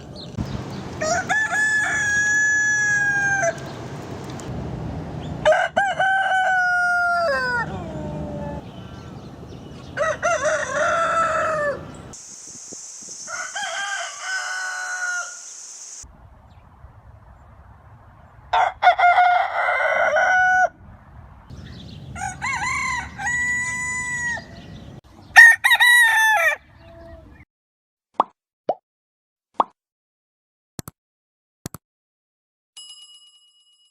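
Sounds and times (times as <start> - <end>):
rooster crowing: 1.0 - 3.7, 5.4 - 8.6, 9.9 - 12.1, 13.3 - 15.5, 18.5 - 20.8, 22.2 - 24.7, 25.4 - 27.2.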